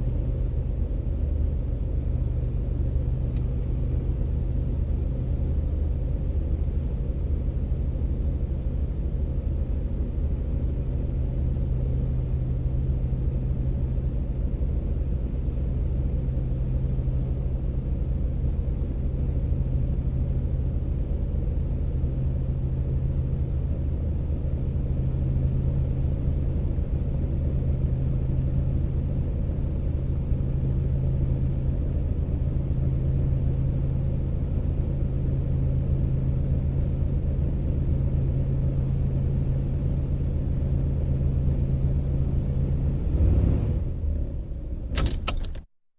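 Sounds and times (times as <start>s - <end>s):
car engine idling: 45.0s - 45.6s.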